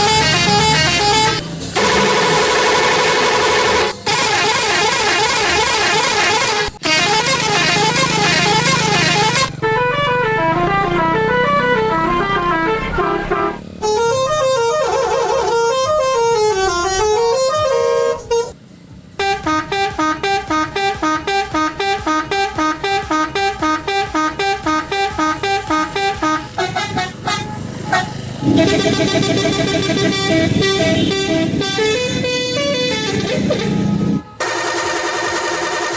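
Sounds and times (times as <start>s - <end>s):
multi-tone horn playing tunes: 0.0s - 18.6s, 19.2s - 34.5s.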